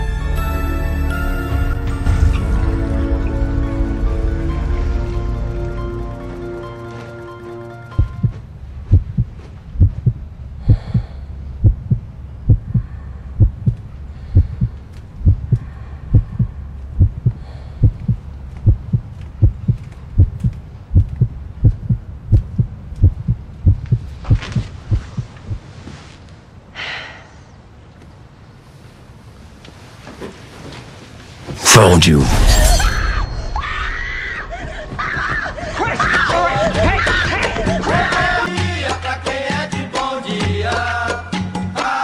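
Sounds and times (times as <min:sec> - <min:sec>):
low heartbeat thumps: 0:08.0 - 0:25.8
breathy hiss: 0:15.5 - 0:18.4.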